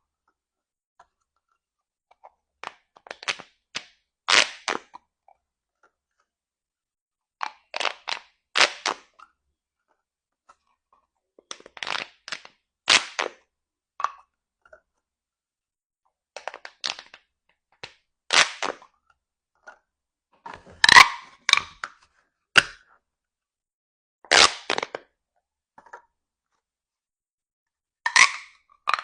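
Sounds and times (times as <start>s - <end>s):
plastic toy tubes popping: 17.8s - 18.9s, 20.6s - 21.9s, 28.1s - 29.0s.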